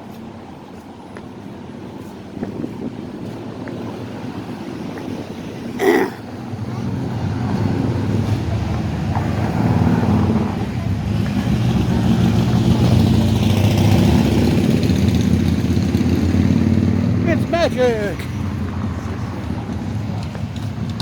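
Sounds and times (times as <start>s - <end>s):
vehicle engine approaching: 6.4s - 21.0s.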